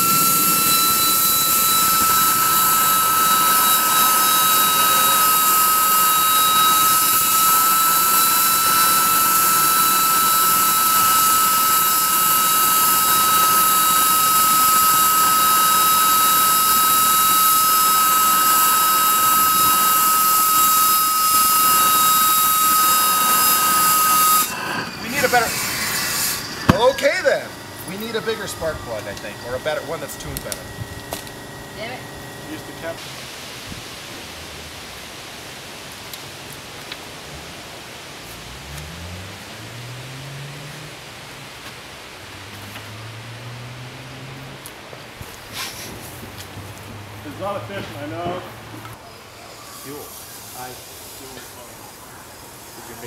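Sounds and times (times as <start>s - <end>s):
jet engine rushing and whining: 0.0s - 34.8s.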